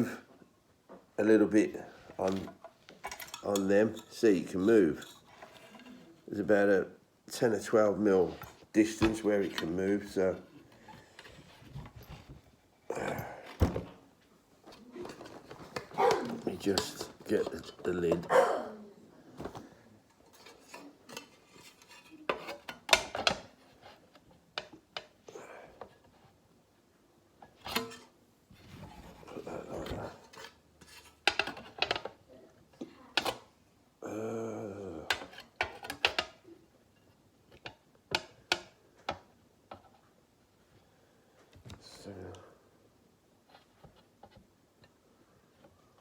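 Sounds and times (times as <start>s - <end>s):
small parts clattering on workbench: 2.3s - 4.2s, 15.0s - 18.3s.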